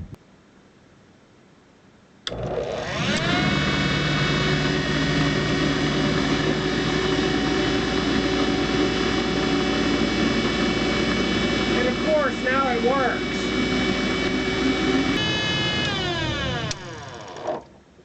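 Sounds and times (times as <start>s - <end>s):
motor click: 2.2s - 3.3s, 15.2s - 17.7s
dishwasher motor whining and humming: 2.3s - 17.6s.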